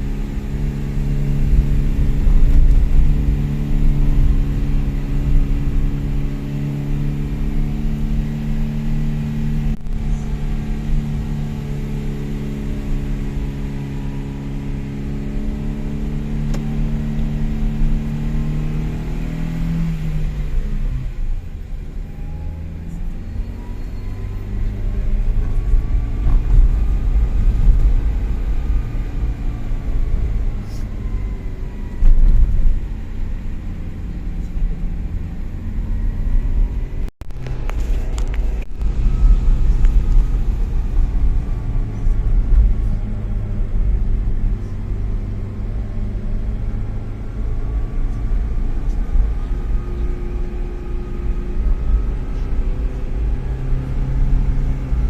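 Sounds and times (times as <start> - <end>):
car engine: 0.0 - 55.0
road rumble: 0.0 - 55.0.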